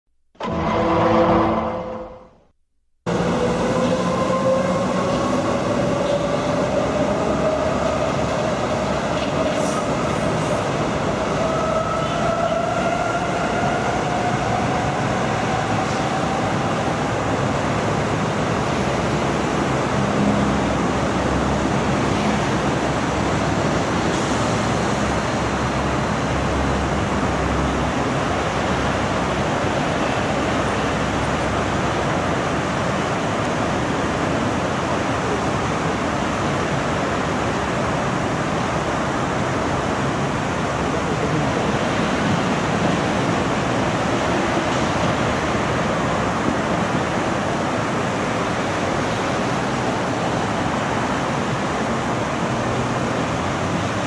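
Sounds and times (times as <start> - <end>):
wheels rushing on rail: 0.4 - 2.4, 3.1 - 54.0.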